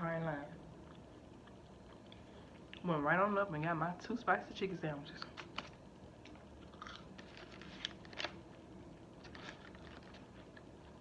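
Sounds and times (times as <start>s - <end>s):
person chewing crunchy food: 0.7s - 2.8s, 5.2s - 11.0s.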